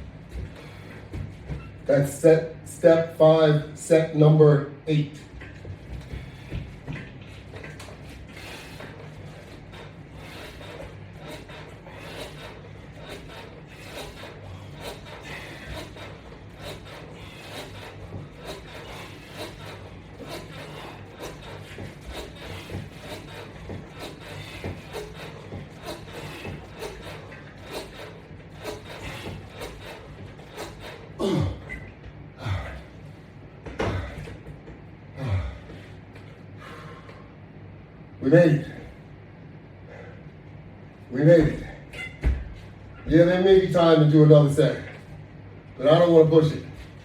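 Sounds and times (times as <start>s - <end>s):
low steady hum: 0.0s - 47.0s
resistance bands rubbing and scraping: 5.2s - 31.8s.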